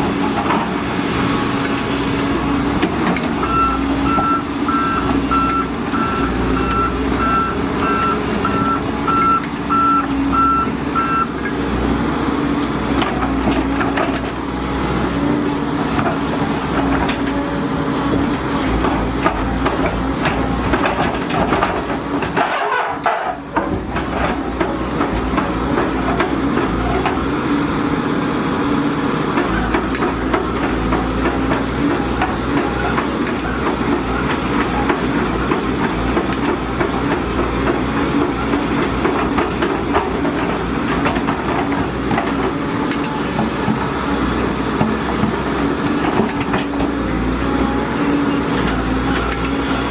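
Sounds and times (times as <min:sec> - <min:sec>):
excavator diesel engine drone: 0:00.0 - 0:49.9
travel alarm beeping: 0:03.5 - 0:11.3.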